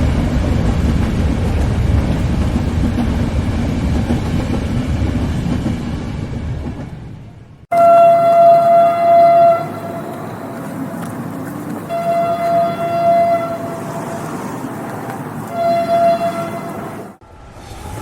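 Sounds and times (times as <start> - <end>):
moving train rumbling: 0.0 - 18.0
train horn blasts: 7.7 - 10.2, 11.9 - 14.2, 15.5 - 17.1.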